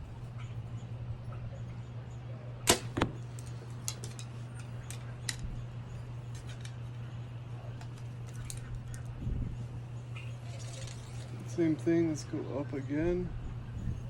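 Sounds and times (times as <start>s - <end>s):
bow string crack: 2.6s - 5.5s
arrow hitting target: 2.7s - 3.2s.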